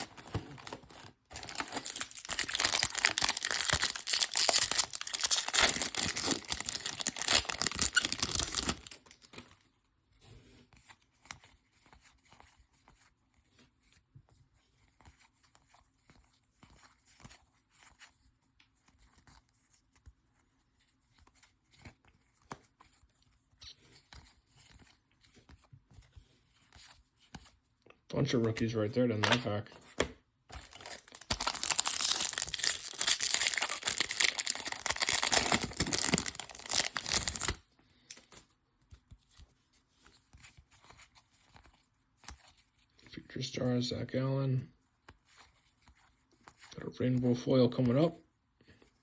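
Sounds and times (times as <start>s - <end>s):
plastic wrapping tearing and crinkling: 0.0s - 9.3s, 30.5s - 37.6s
cards rustling and clicking: 0.0s - 9.6s, 21.0s - 27.6s, 28.4s - 43.1s.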